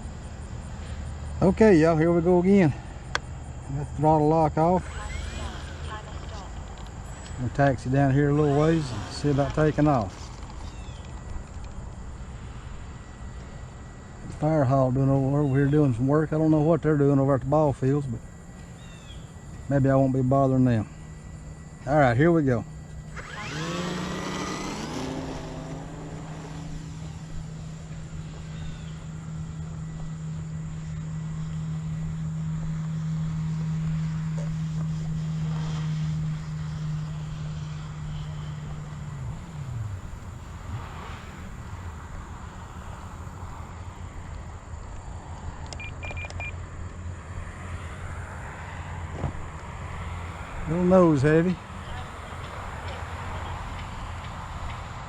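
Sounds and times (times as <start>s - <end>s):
steady low rumble: 0.0s - 23.2s, 24.0s - 54.6s
model plane motor droning: 0.0s - 55.0s.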